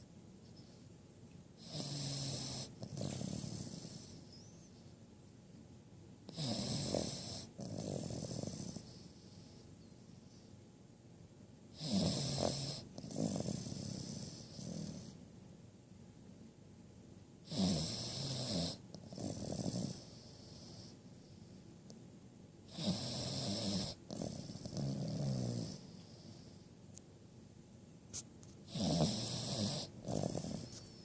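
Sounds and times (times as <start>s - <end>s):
puppy snoring: 1.6s - 4.8s, 6.3s - 9.7s, 11.7s - 15.3s, 17.4s - 21.4s, 22.6s - 26.7s, 28.1s - 31.0s.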